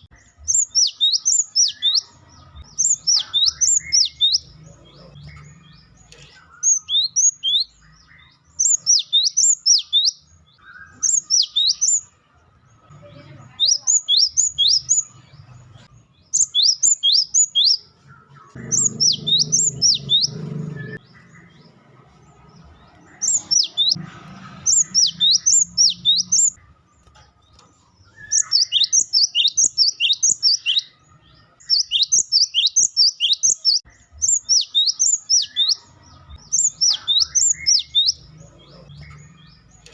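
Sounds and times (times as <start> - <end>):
bird calling sharp notes: 18.6 - 21.6.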